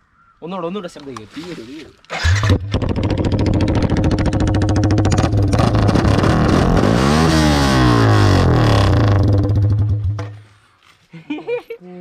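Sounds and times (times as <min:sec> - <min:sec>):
loud motorcycle engine running: 0:02.2 - 0:10.4.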